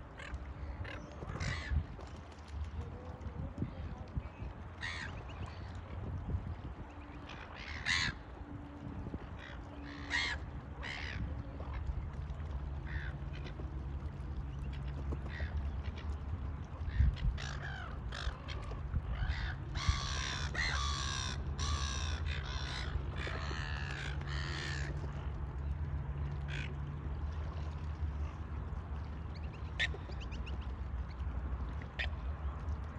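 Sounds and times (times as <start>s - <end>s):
crows cawing: 7.7s - 8.2s, 9.8s - 11.1s, 19.2s - 24.9s.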